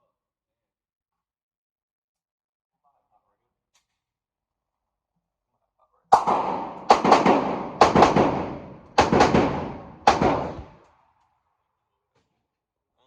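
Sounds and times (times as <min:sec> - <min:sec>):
handgun shots echoing indoors: 0:06.2 - 0:10.9.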